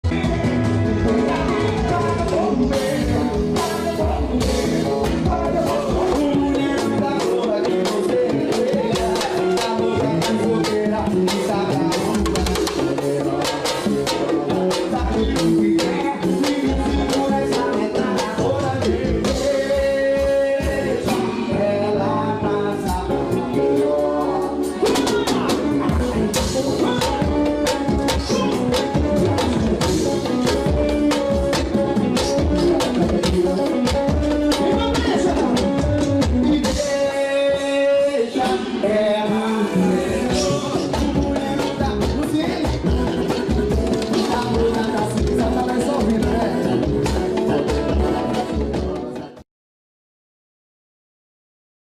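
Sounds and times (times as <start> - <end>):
pitched melody line: 0.0 - 49.3
drums keeping a beat: 0.0 - 49.4
street band singing: 0.0 - 49.4.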